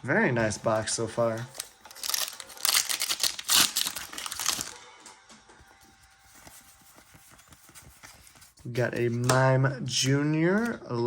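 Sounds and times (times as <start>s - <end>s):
card packaging rustling: 0.7s - 4.8s, 5.7s - 9.4s
cards being handled with light taps: 5.9s - 9.5s.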